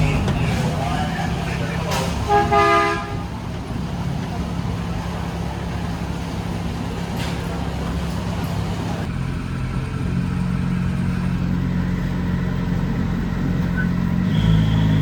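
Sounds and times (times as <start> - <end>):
train clattering on track: 0.0 - 9.2
train engine hum: 0.0 - 15.0.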